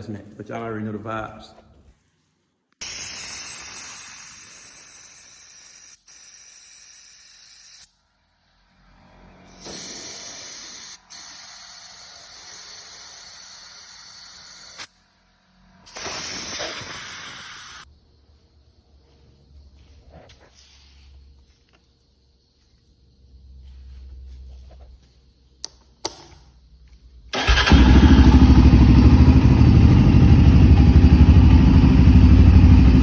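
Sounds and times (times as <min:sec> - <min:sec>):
pressurised spray hissing: 0:02.8 - 0:07.9, 0:09.5 - 0:15.0, 0:15.9 - 0:17.9.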